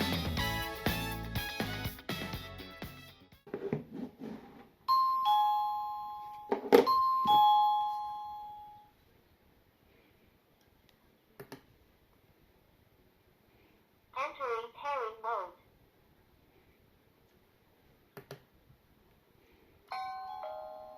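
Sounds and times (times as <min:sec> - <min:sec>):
ding-dong doorbell chime: 0:04.9 - 0:08.9, 0:19.9 - 0:20.9.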